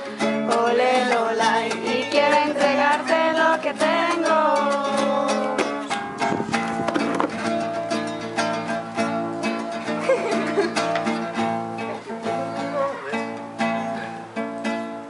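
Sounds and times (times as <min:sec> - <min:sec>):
person singing: 0:00.0 - 0:06.0
acoustic guitar strumming: 0:00.0 - 0:15.0.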